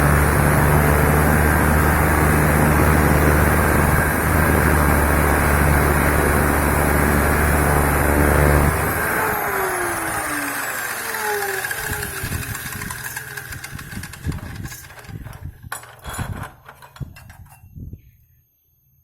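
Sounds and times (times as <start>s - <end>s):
cut-off saw winding down: 0.0s - 15.4s
clicks and knocks: 13.1s - 17.6s.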